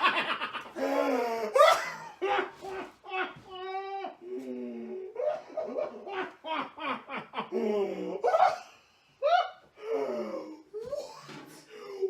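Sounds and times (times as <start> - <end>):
man laughing in squeals: 0.0 - 4.5, 5.1 - 9.7.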